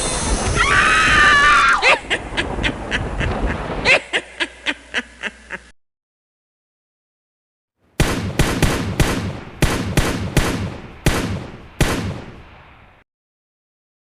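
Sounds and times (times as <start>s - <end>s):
sharp slaps: 8.0s - 12.4s.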